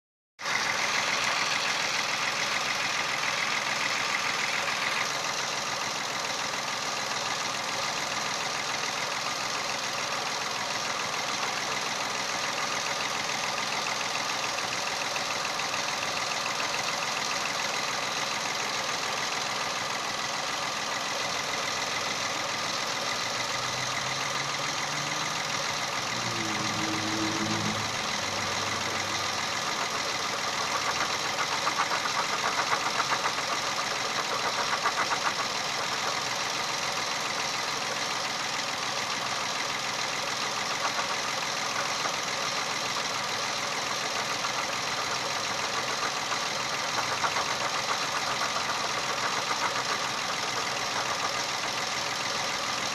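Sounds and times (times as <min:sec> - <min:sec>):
car engine idling: 0:00.4 - 0:52.9.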